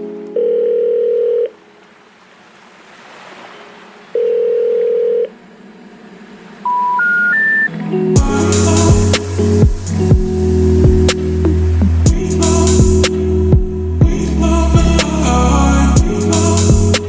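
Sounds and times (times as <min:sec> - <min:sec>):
telephone ringing tone: 0:00.3 - 0:01.6, 0:04.2 - 0:05.3, 0:06.6 - 0:07.7
rising short beeps: 0:06.6 - 0:07.7.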